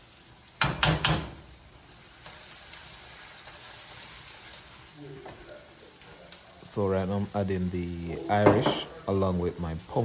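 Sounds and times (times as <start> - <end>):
vegetables sizzling in oil: 0.0 - 10.0
utensil knocking on pot: 8.4 - 8.9.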